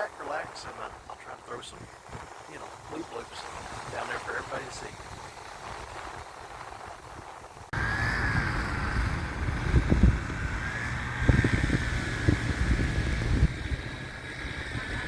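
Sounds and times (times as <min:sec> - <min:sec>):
wind buffeting microphone: 0:00.0 - 0:15.0
motorboat motor whine: 0:07.7 - 0:15.0.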